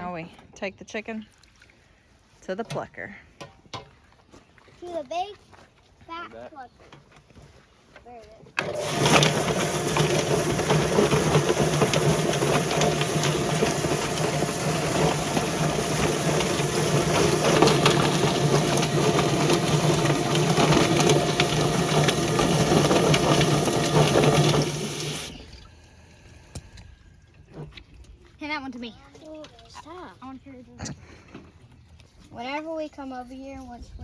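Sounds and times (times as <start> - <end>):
water spraying: 8.6 - 25.5
motor humming: 8.6 - 25.7.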